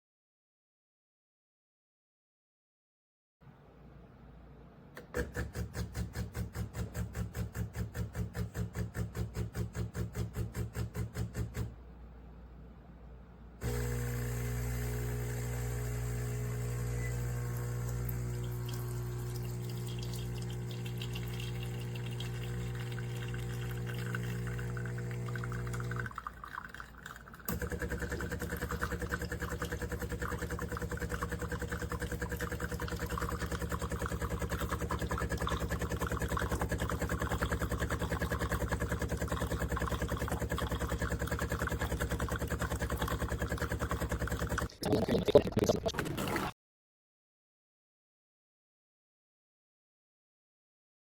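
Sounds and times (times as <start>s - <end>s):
espresso machine motor hum: 13.6s - 26.2s, 27.1s - 44.7s
pump pulsing buzz: 13.6s - 26.2s, 27.1s - 46.5s.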